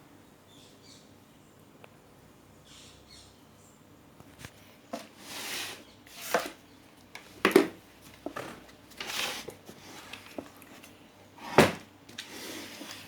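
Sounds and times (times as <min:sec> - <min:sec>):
rubbing and scraping on workbench: 0:05.0 - 0:06.6, 0:08.3 - 0:10.5, 0:11.4 - 0:13.0.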